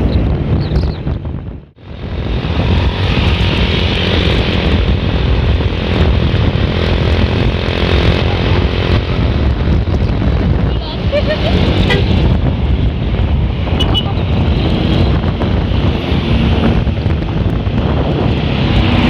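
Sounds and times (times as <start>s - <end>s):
wind buffeting microphone: 0.0s - 19.0s
bus engine rumbling: 1.2s - 19.0s.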